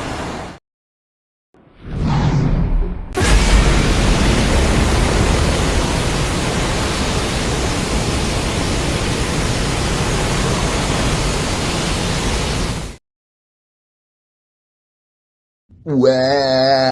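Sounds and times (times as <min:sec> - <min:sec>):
loud steady rushing beam effect: 0:03.2 - 0:13.0.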